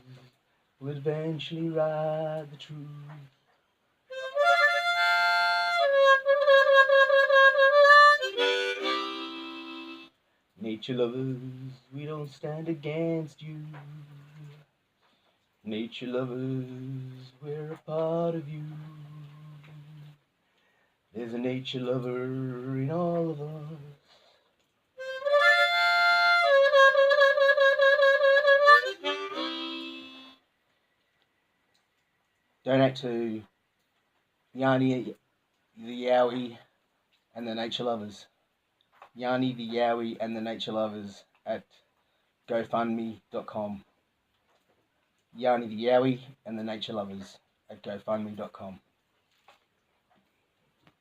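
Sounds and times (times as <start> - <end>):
harmonica playing: 4.1 - 10.2, 25.0 - 30.5
instrumental music with held notes: 4.1 - 10.2, 25.0 - 30.5.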